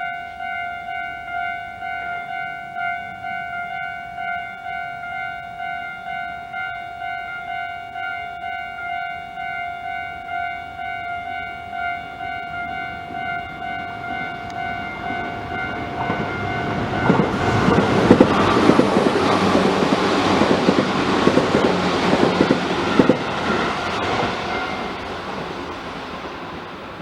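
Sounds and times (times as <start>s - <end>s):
level crossing warning bell: 0.0s - 25.7s
train wheels clacking over rail joints: 14.1s - 26.8s.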